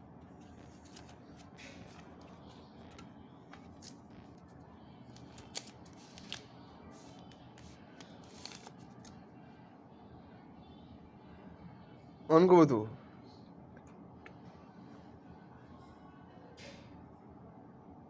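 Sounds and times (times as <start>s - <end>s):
packaging rustling and scraping: 0.4s - 3.0s, 5.2s - 6.4s, 7.0s - 9.1s.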